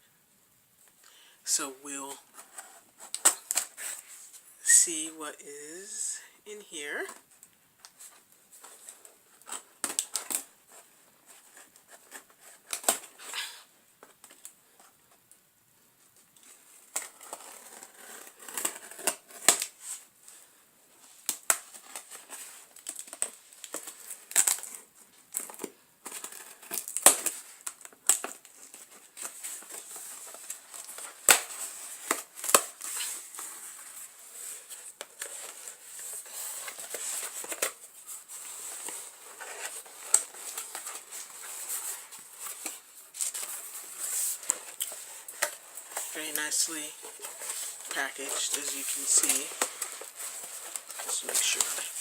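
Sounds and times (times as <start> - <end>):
tape tearing: 16.9 - 20.0, 21.2 - 52.0
plastic wrapping crinkling: 21.2 - 52.0.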